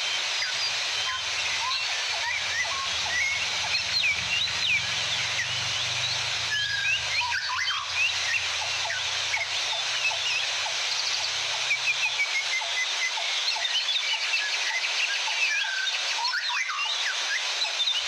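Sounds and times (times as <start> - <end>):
songbirds chirping and whistling: 0.1 - 18.0
waterfall rushing: 0.8 - 12.2
low hum: 1.1 - 11.4.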